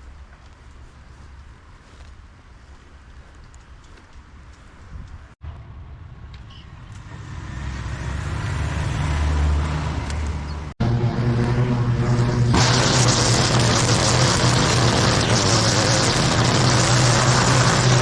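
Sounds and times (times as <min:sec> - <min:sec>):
engine running: 0:05.4 - 0:18.0.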